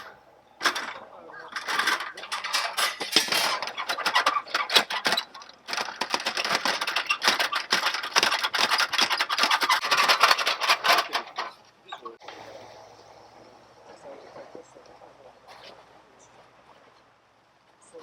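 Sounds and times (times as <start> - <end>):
camping gear rustling and scraping: 0.0 - 12.4.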